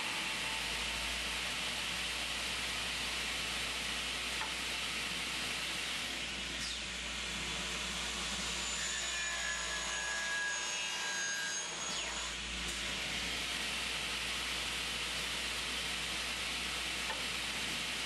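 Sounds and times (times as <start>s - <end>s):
miter saw cutting metal: 6.5s - 12.5s.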